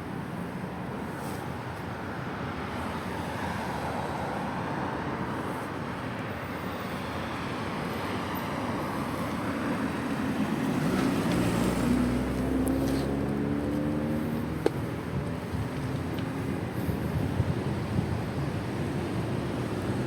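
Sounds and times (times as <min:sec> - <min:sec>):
city road traffic: 0:00.0 - 0:20.0
vehicle engine hum close by: 0:00.0 - 0:20.0.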